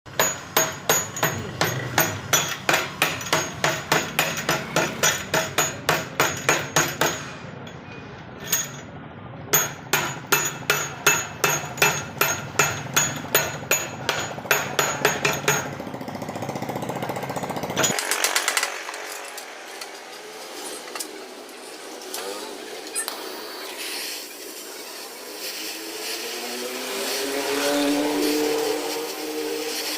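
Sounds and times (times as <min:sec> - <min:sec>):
hammer striking metal: 0:00.1 - 0:07.8, 0:09.5 - 0:15.8
steady hiss: 0:19.9 - 0:29.9.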